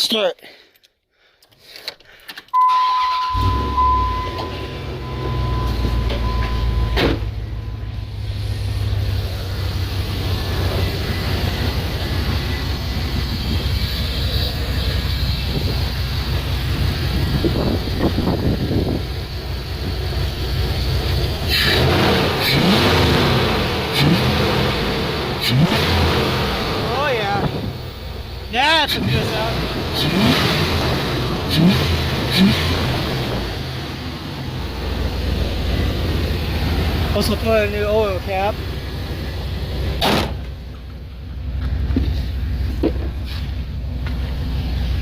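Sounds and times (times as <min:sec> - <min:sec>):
engine starting and idling: 0:01.7 - 0:40.9
high warning tone: 0:02.5 - 0:17.2.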